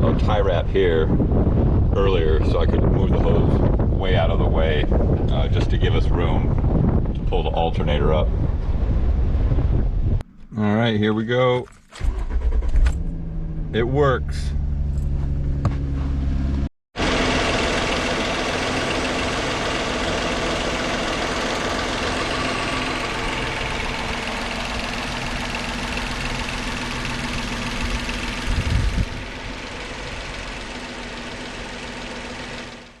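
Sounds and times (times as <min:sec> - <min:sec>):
car engine idling: 0:12.0 - 0:33.0.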